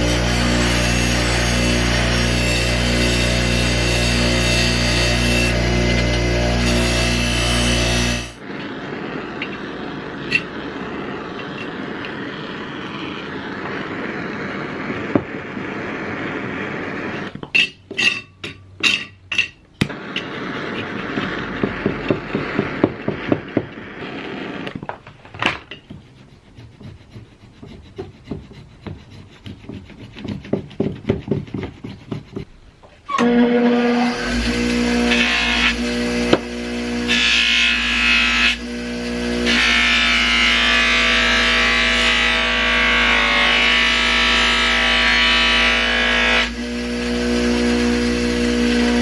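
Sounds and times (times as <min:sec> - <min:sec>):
hand tool rasping on metal: 0:25.7 - 0:32.5.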